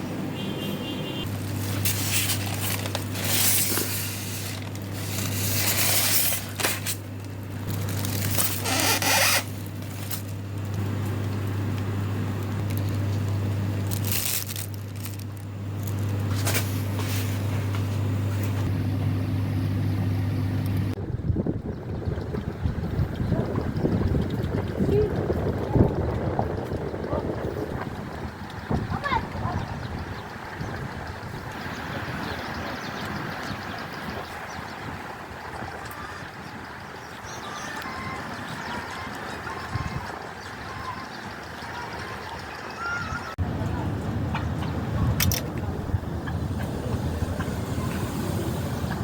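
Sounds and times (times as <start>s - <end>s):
low mechanical hum: 0.0s - 49.0s
rushes of wind-like noise: 21.0s - 41.3s, 43.0s - 49.0s.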